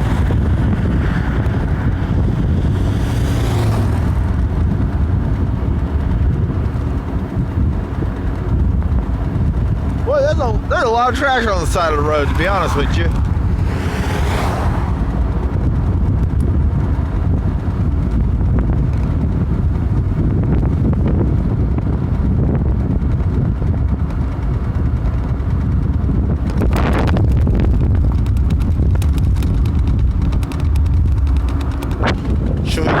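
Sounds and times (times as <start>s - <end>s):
low road rumble: 0.0s - 33.0s
wind buffeting microphone: 0.0s - 33.0s
rushing noise: 10.0s - 17.8s.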